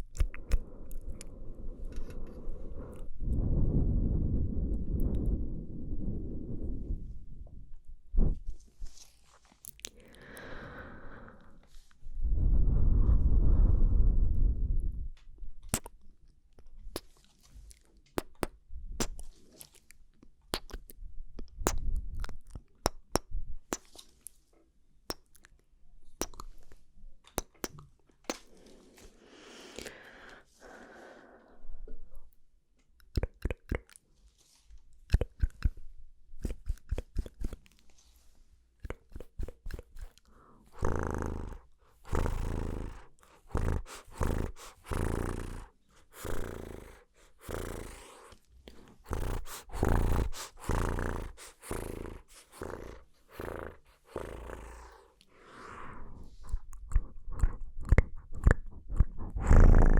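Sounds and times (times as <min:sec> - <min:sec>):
wet mouth clicks and smacks: 0:00.0 - 0:03.4, 0:09.6 - 0:10.6, 0:15.6 - 0:24.4, 0:25.1 - 0:28.6, 0:33.0 - 0:34.0, 0:35.0 - 0:37.8, 0:38.8 - 0:55.3, 0:56.2 - 0:59.9
breathing: 0:00.4 - 0:07.0, 0:09.9 - 0:14.7, 0:28.4 - 0:32.2, 0:40.2 - 0:57.3.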